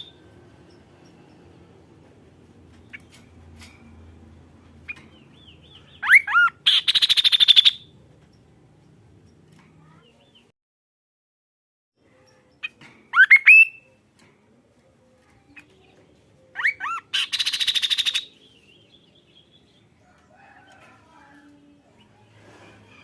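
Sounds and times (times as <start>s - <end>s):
faint bird chirps: 12.0s - 14.1s.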